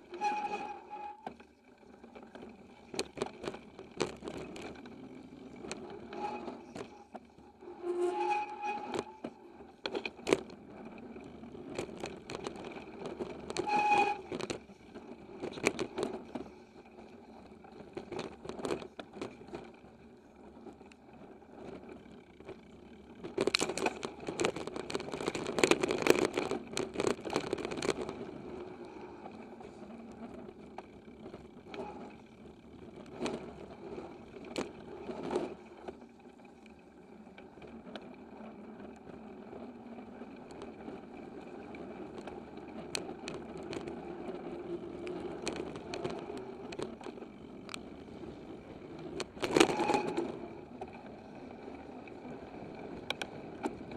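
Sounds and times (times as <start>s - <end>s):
bike knocking and rattling: 0.0s - 53.9s
bike tyre rumble on dirt: 0.0s - 53.9s.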